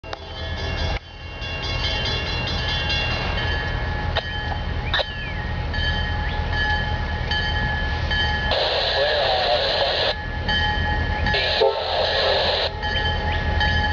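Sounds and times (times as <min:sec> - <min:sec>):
diesel locomotive engine rumble: 0:00.0 - 0:13.9.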